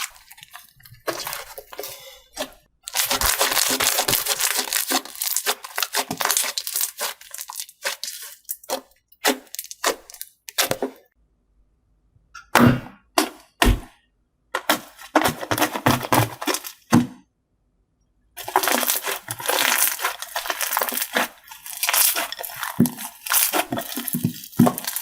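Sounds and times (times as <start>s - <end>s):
slime crackling and tearing: 0.0s - 10.7s, 14.7s - 16.9s, 18.4s - 25.0s.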